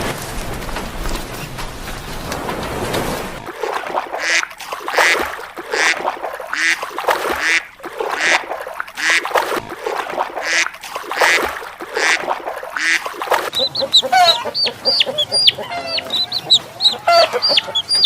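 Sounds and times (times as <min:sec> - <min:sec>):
animal calling: 0:12.0 - 0:18.0.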